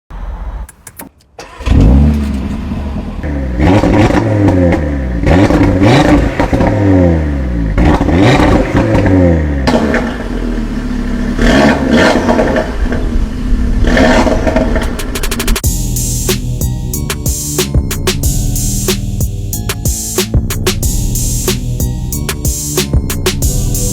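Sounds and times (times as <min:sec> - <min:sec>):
car engine revving: 0:01.4 - 0:16.4, 0:20.2 - 0:23.9.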